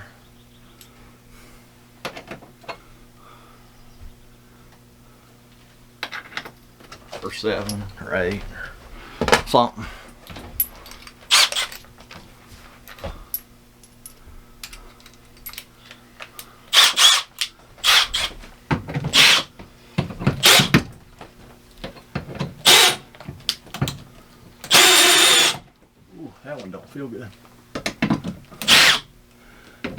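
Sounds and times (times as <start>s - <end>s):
steady low hum: 0.0s - 29.9s
cordless drill unscrewing: 10.9s - 11.9s, 16.7s - 18.4s, 19.1s - 19.5s, 20.4s - 20.8s, 22.6s - 23.0s, 24.7s - 25.6s, 28.6s - 29.0s.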